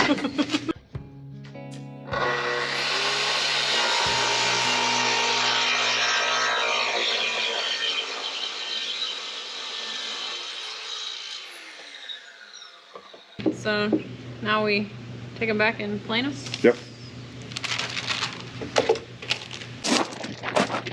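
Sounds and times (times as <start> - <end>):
power tool cutting wood: 2.1 - 13.9
power tool humming: 2.1 - 19.8.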